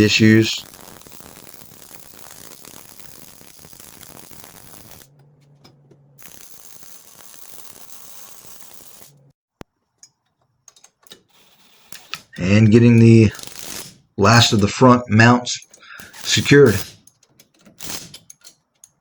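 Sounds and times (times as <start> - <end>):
welding arc crackling: 0.0 - 5.2, 6.2 - 9.3, 11.1 - 14.7, 15.6 - 17.0, 17.8 - 18.1.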